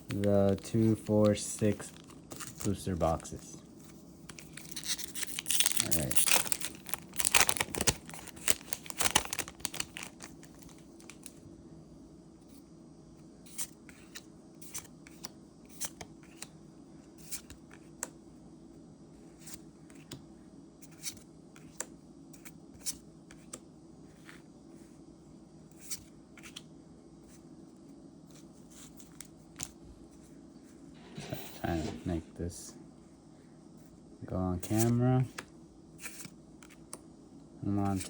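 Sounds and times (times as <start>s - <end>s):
foil wrapper crinkling and tearing: 4.4s - 11.3s.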